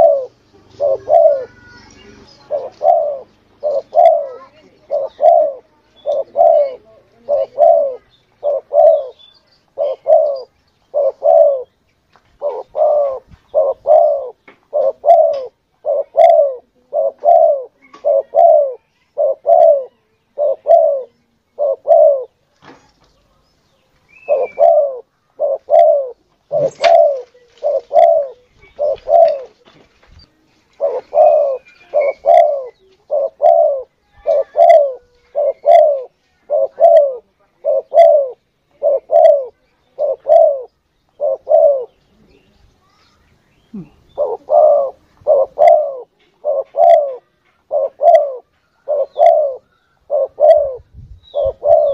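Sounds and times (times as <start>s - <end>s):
dove cooing: 0.0s - 11.8s, 12.4s - 22.4s, 24.2s - 29.7s, 30.6s - 42.4s, 43.7s - 51.9s.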